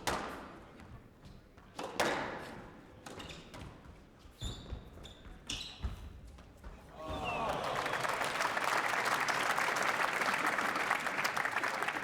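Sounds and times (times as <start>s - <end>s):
court shoes squeaking: 3.0s - 7.4s.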